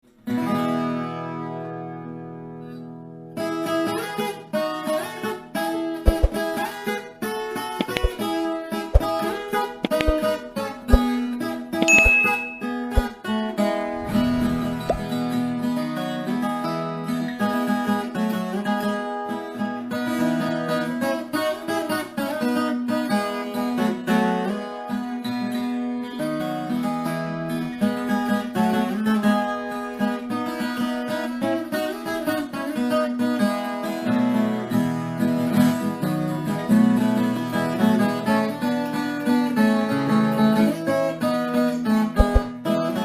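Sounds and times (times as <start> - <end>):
acoustic guitar strumming: 11.8 - 17.3, 41.1 - 43.0.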